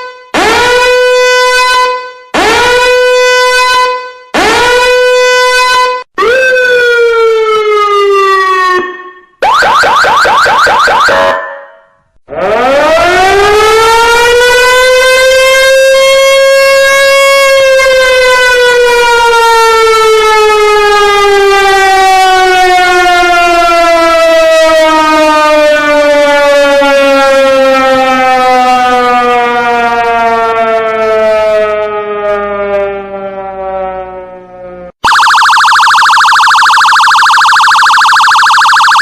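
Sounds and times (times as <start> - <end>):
siren winding down: 0.0 - 39.0
rapidly pulsing alarm tone: 8.6 - 13.2, 35.0 - 39.0.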